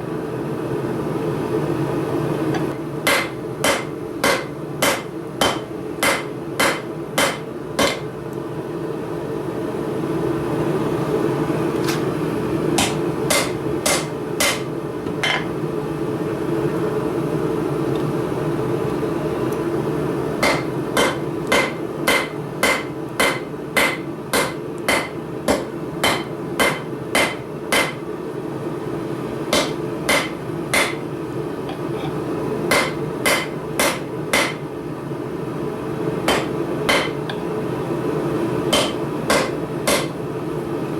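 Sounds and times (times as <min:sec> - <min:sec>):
hammer striking steel on anvil: 0:02.6 - 0:08.1, 0:12.8 - 0:15.5, 0:20.4 - 0:28.0, 0:29.5 - 0:31.0, 0:32.7 - 0:34.6, 0:36.3 - 0:37.4, 0:38.7 - 0:40.2.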